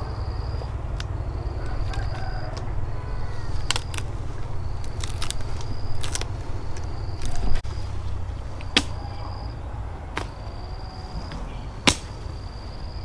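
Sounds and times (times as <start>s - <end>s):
sharp knocks: 11.2s - 12.4s.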